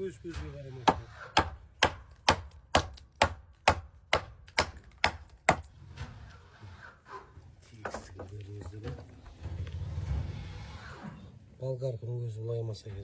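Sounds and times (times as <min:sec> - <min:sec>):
hammer strikes: 0:00.3 - 0:05.8.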